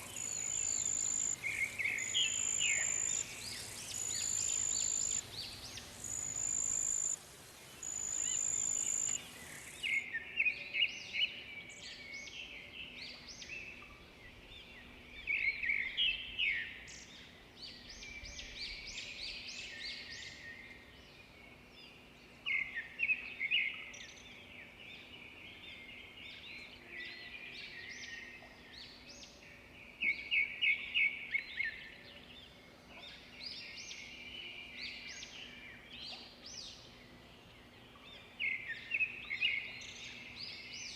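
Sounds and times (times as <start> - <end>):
small birds chirping: 0.0 - 10.0.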